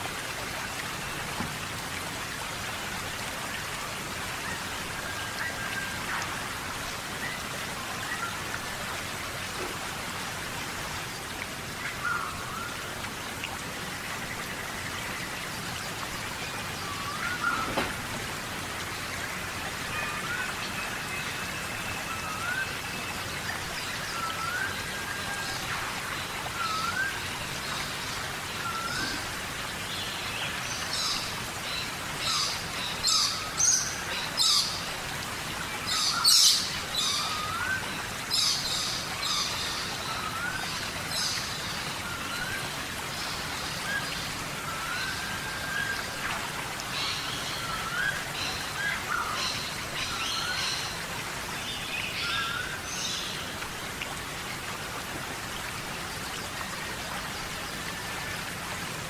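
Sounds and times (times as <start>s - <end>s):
rain hissing: 0.9s - 22.4s.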